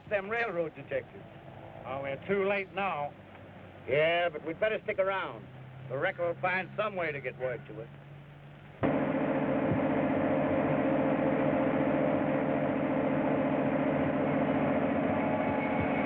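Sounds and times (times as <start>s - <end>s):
train running along track: 8.8s - 16.0s.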